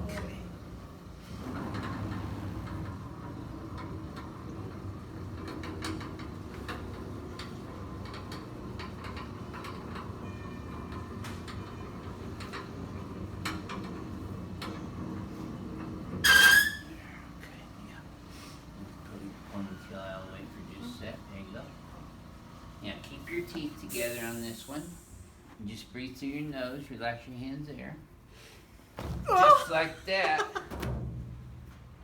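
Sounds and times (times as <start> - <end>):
high-pitched squeak: 16.2 - 17.0.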